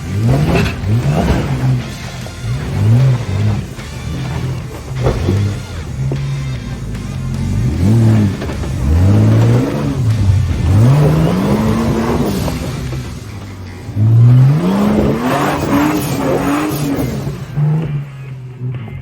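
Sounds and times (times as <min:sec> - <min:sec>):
engine revving: 0:00.0 - 0:19.0.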